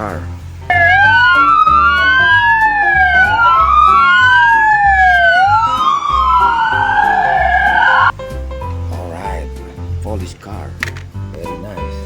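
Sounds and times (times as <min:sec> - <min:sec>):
background music with steady beat: 0:00.0 - 0:12.0
police siren wailing: 0:00.7 - 0:08.1.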